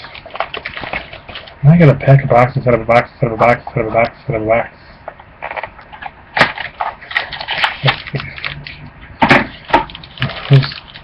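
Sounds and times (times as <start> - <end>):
packaging crackling and tearing: 5.4 - 8.8, 9.5 - 11.0.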